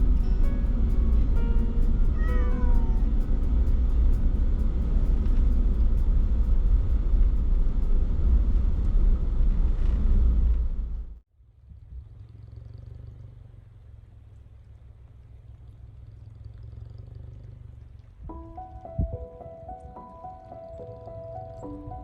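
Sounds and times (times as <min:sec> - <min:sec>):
van engine rumble from inside: 0:00.0 - 0:11.2
cat meowing: 0:02.1 - 0:03.1.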